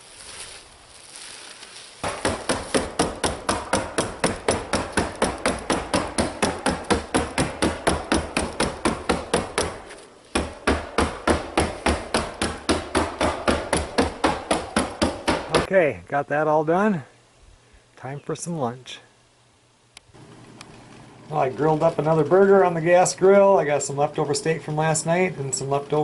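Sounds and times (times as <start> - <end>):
rapid hammering on plywood: 2.0 - 15.7.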